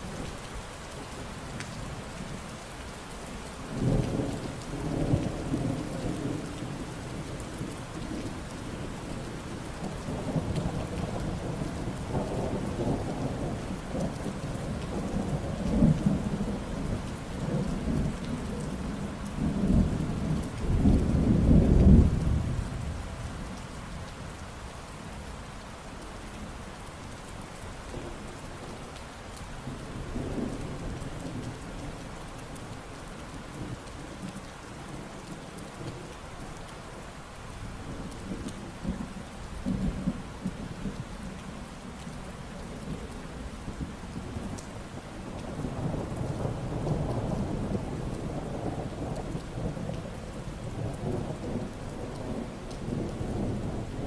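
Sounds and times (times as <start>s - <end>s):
steady rain falling: 0.0s - 54.0s
rumble of thunder: 3.7s - 23.2s, 45.4s - 54.0s.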